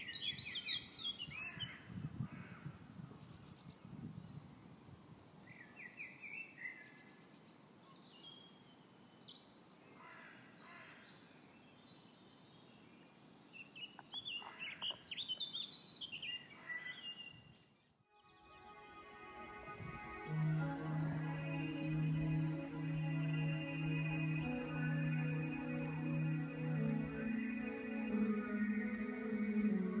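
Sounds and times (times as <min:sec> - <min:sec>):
wild birds chirping: 0:13.8 - 0:17.5, 0:19.3 - 0:30.0
faint steady hiss: 0:18.3 - 0:30.0.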